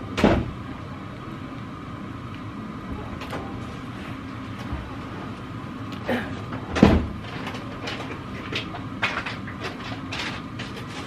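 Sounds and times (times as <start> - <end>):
faint high hum: 0.0 - 11.0.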